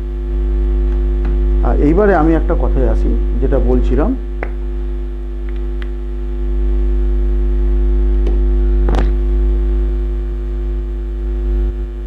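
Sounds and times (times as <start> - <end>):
electrical mains hum: 0.0 - 12.0.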